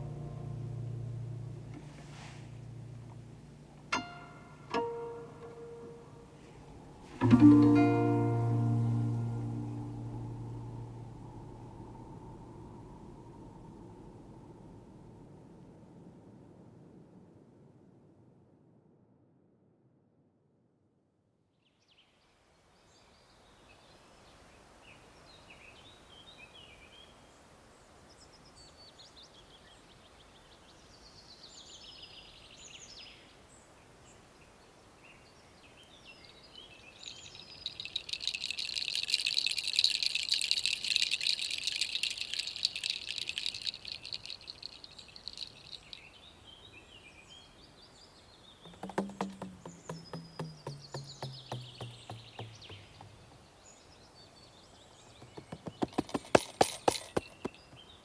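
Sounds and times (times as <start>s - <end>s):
low pulsing sound: 0.0s - 4.7s, 5.6s - 14.6s
small birds chirping: 36.2s - 58.0s.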